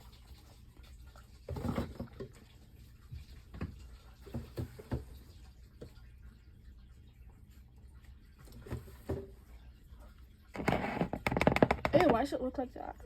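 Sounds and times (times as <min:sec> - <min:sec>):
plastic tube and containers handled: 0:10.6 - 0:12.3.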